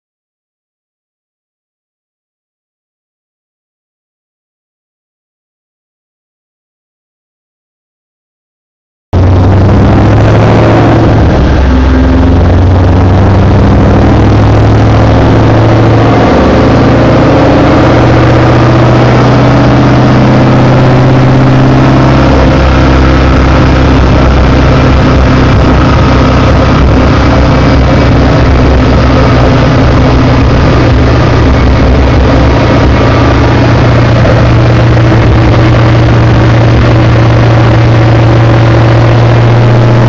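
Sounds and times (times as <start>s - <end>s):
car engine cruising: 9.2s - 40.0s.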